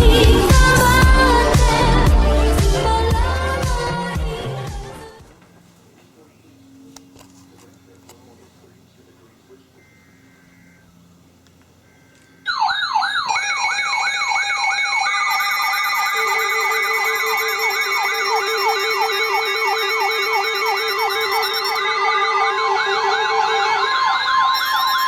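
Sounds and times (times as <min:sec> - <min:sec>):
siren-like warble alarm: 0:12.1 - 0:25.0
steady alarm tone: 0:12.5 - 0:25.0
steady and pulsing beep tones: 0:12.5 - 0:25.0.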